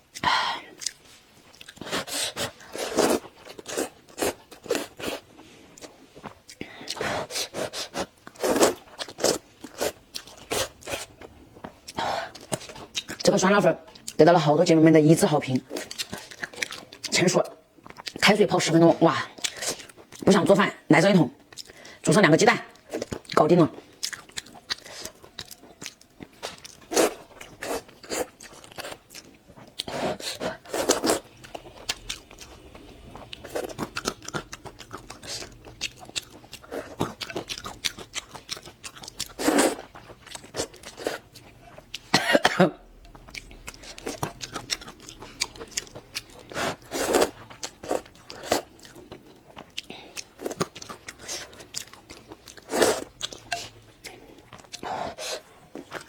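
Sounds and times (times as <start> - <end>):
person chewing and crunching: 0.1 - 13.3, 15.7 - 17.2, 22.8 - 42.2, 42.8 - 56.0.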